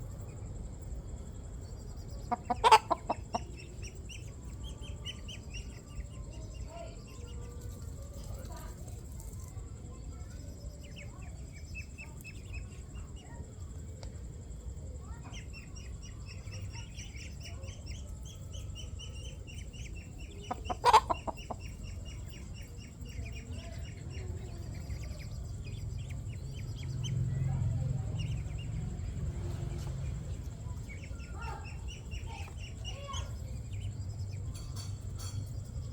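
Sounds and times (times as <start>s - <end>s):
chick peeping: 1.3s - 35.9s
hen clucking: 2.2s - 5.9s, 16.1s - 27.1s.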